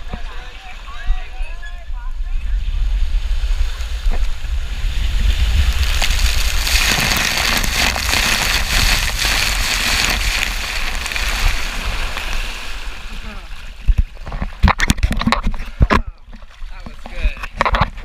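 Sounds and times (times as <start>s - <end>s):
wind buffeting microphone: 0.0s - 13.0s
water rushing: 2.1s - 17.9s.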